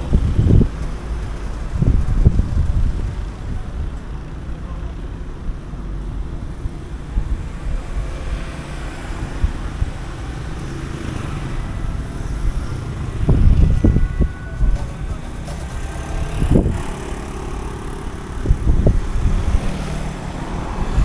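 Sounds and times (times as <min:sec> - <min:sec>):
street traffic: 0:00.0 - 0:21.0
wind buffeting microphone: 0:00.0 - 0:21.0.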